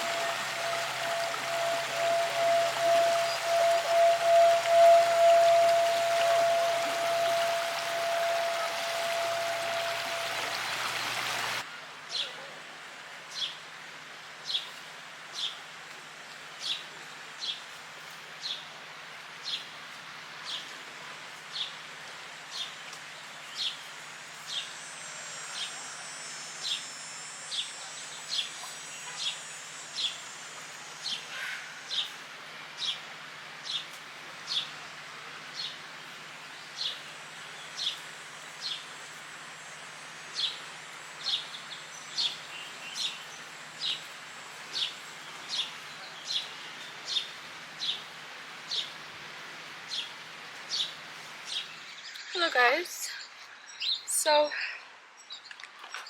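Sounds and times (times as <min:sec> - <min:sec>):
bird chirping: 0:00.0 - 0:11.6
thin bird trill: 0:00.0 - 0:11.6
wash of sound with steady tone: 0:00.0 - 0:52.6
outdoor background noise: 0:00.0 - 0:56.0.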